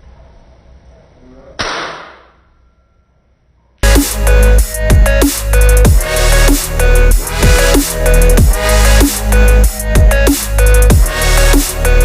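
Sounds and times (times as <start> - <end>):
electronic dance music: 3.8 - 12.0.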